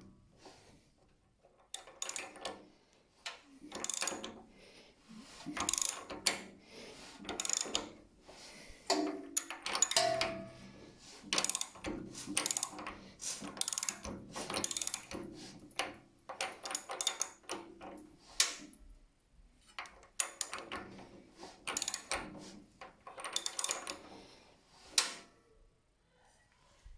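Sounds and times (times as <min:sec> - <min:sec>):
mechanical clicking and ratcheting: 0:01.7 - 0:02.5, 0:03.7 - 0:04.3, 0:13.6 - 0:15.2, 0:23.1 - 0:24.0.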